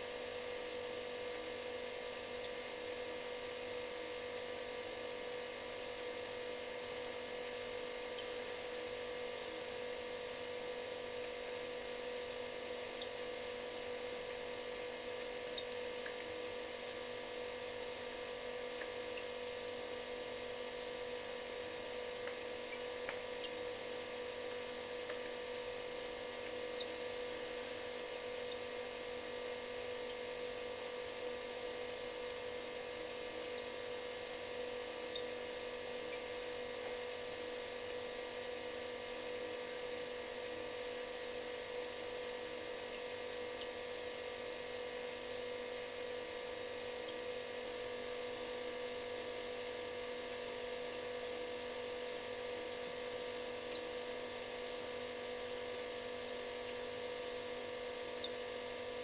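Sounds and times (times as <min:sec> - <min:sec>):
refrigerator humming: 0:00.0 - 0:59.0
faint ticks: 0:00.1 - 0:03.7, 0:10.3 - 0:20.7, 0:21.4 - 0:31.6, 0:35.0 - 0:40.6, 0:41.2 - 0:45.0, 0:45.7 - 0:54.9, 0:55.5 - 0:57.4, 0:58.0 - 0:59.0.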